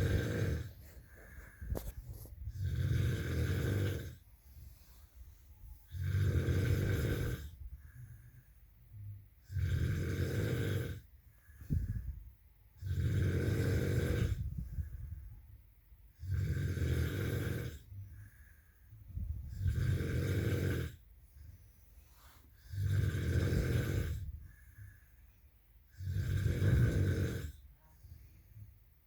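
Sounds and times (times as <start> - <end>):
person snoring heavily: 0.0 - 4.2, 5.9 - 8.3, 9.4 - 12.1, 12.8 - 15.0, 16.2 - 18.6, 19.2 - 21.0, 22.2 - 25.1, 25.9 - 27.6
snort: 0.0 - 4.2, 5.9 - 7.6, 9.4 - 11.1, 12.8 - 14.6, 16.2 - 17.9, 19.2 - 21.0, 22.2 - 24.9, 25.9 - 27.7
quiet breathing: 0.0 - 29.0.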